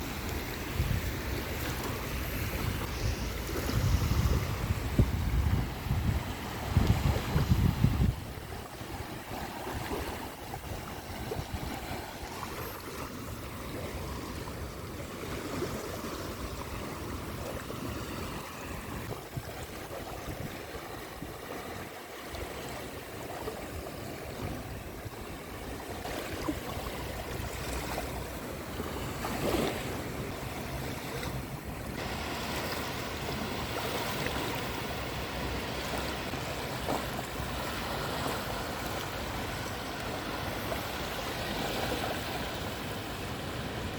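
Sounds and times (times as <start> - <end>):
waves washing onto shore: 0.0 - 43.9.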